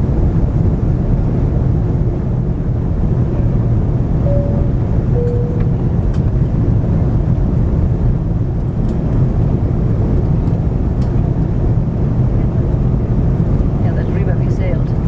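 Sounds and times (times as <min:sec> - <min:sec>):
airliner cabin rumble: 0:00.0 - 0:15.0
two-note cabin chime: 0:04.2 - 0:05.9.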